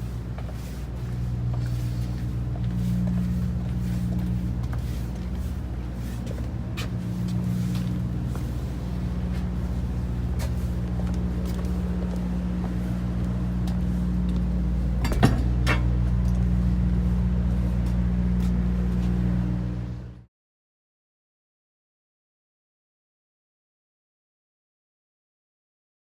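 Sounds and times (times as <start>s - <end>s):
engine humming: 0.0s - 20.3s.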